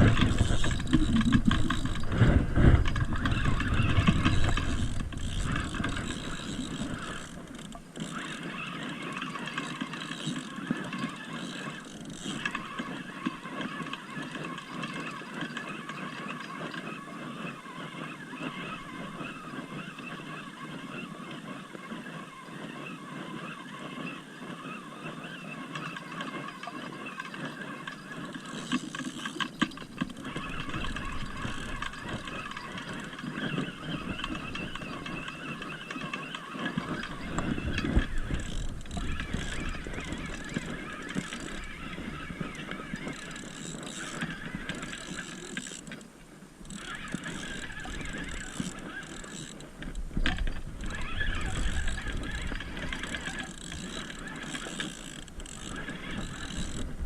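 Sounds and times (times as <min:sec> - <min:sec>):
wind rumbling on microphone: 0:00.0 - 0:07.6, 0:29.6 - 0:43.5, 0:46.7 - 0:57.0
fishing reel whirring and clicking: 0:00.0 - 0:57.0.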